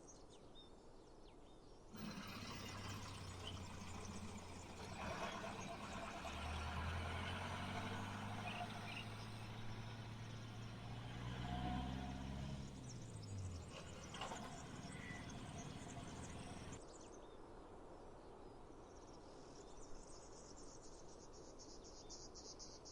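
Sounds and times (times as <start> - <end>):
faint bird chirps: 2.0 - 11.0
vehicle engine humming: 2.0 - 16.8.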